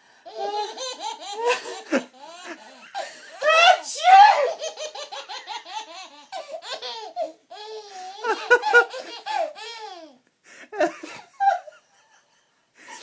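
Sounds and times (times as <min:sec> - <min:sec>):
baby laughing: 0:00.3 - 0:10.2.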